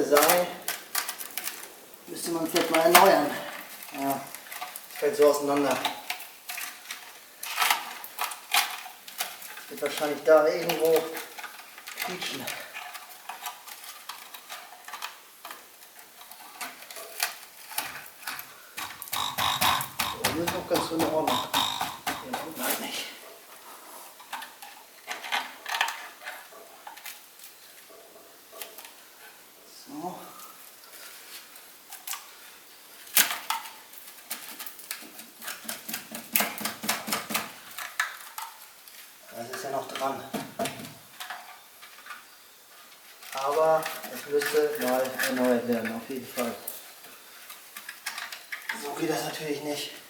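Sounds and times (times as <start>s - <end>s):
metal clicking and rattling: 16.2s - 22.7s.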